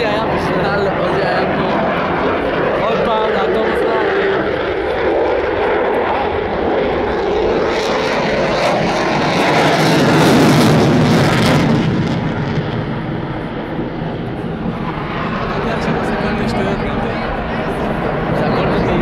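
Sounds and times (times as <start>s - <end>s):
jet passing overhead: 0.0s - 19.0s.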